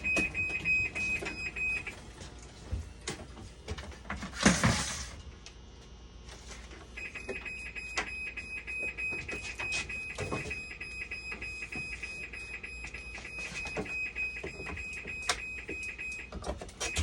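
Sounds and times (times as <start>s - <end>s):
continuous high-pitched alarm beep: 0.0s - 2.0s, 7.0s - 17.0s.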